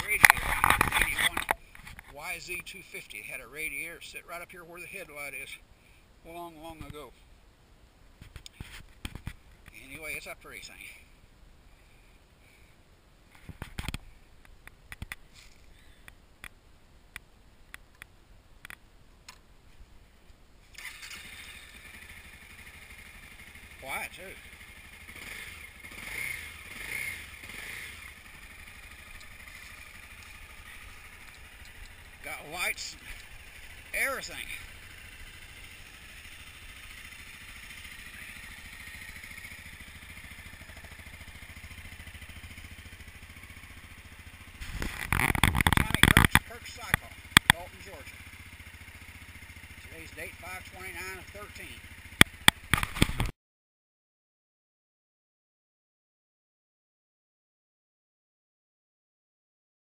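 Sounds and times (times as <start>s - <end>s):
motorcycle engine idling: 0.0s - 7.1s, 20.6s - 53.3s.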